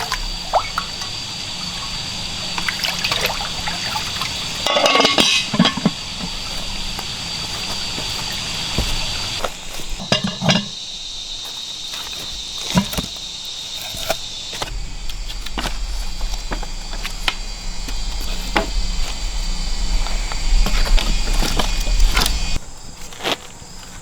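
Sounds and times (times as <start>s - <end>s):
high-pitched insect drone: 0.0s - 22.6s
low rumble: 14.6s - 22.6s.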